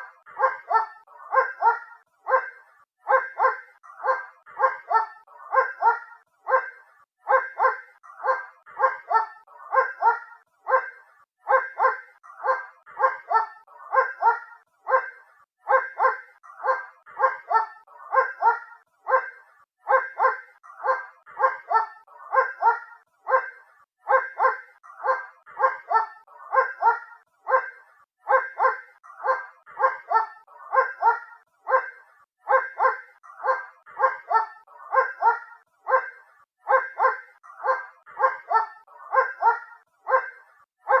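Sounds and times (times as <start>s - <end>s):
distant dog barking: 0.0s - 41.0s.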